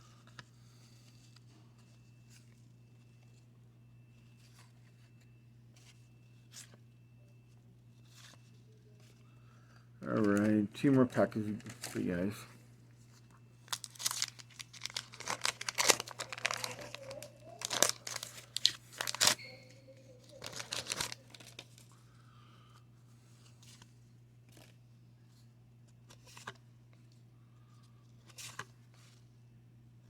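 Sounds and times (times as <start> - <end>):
paper crinkling and rustling: 7.5 - 9.2, 10.1 - 21.9, 26.0 - 27.1, 28.1 - 29.2
wax paper wrapper tearing: 13.7 - 19.4, 20.3 - 21.8.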